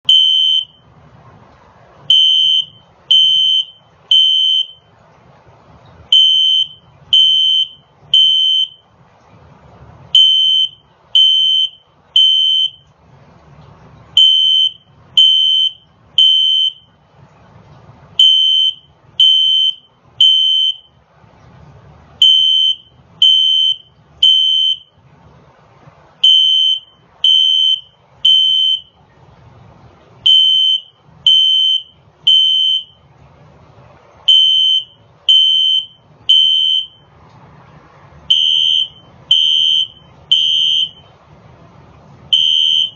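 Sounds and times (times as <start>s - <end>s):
fire alarm beeping: 0.1s - 0.9s, 2.1s - 4.9s, 6.1s - 8.8s, 10.2s - 12.8s, 14.2s - 16.9s, 18.2s - 20.9s, 22.2s - 24.9s, 26.2s - 29.0s, 30.2s - 33.0s, 34.3s - 37.0s, 38.3s - 41.1s, 42.3s - 42.9s.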